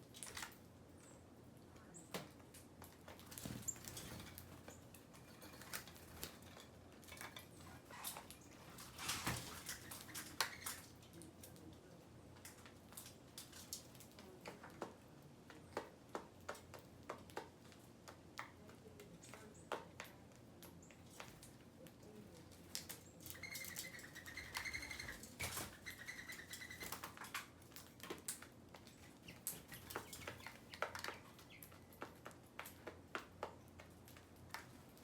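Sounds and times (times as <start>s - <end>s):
birds pecking at seed: 0.0s - 35.0s.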